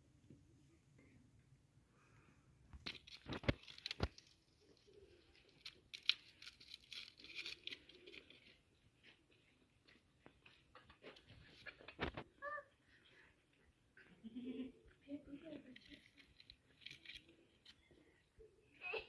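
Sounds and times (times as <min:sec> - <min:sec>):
rustling and crinkling: 0:02.7 - 0:13.7, 0:15.0 - 0:19.0.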